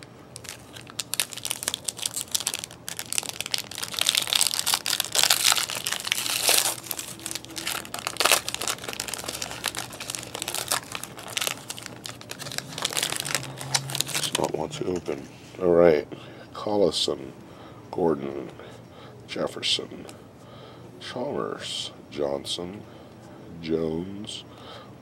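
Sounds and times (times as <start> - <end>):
plastic wrapper crinkling and tearing: 0.0 - 14.6.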